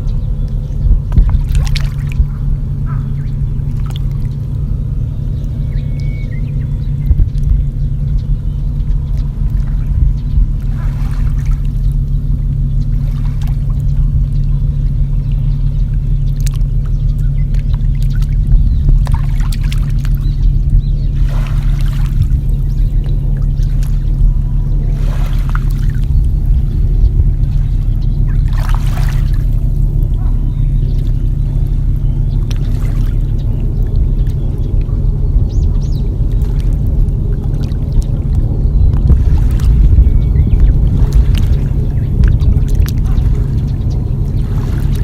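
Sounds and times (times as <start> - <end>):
water trickling and splashing: 0.0 - 6.3, 7.0 - 45.0
low rumble: 0.0 - 45.0
small water drips: 0.4 - 4.6, 5.4 - 45.0
water splash: 1.1 - 2.3, 21.1 - 22.8, 24.8 - 30.2, 36.3 - 45.0.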